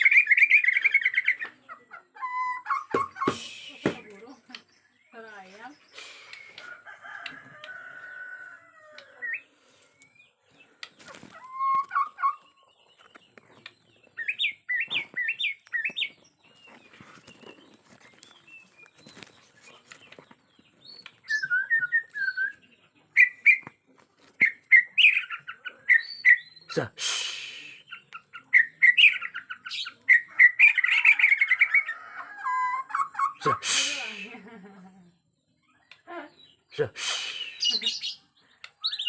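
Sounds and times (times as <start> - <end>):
bird whistling song: 0.0 - 1.5, 2.2 - 4.2, 5.8 - 6.7, 11.2 - 13.2, 13.8 - 19.3, 20.8 - 23.8, 24.4 - 34.4, 37.1 - 39.0.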